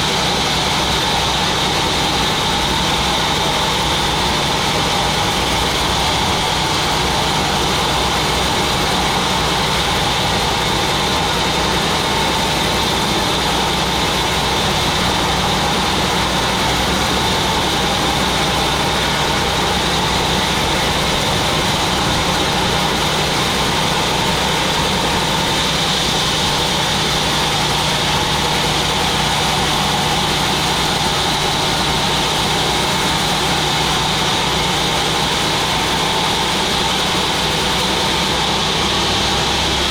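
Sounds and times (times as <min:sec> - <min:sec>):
constant high whine: 0:00.0 - 0:39.9
sawmill machinery drone: 0:00.0 - 0:39.9.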